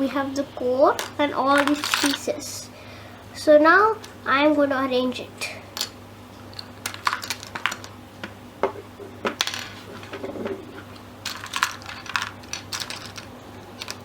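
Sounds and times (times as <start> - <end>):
low steady hum: 0.0 - 14.0
plastic puzzle pieces clacking: 1.0 - 2.3, 6.5 - 7.9, 9.3 - 14.0.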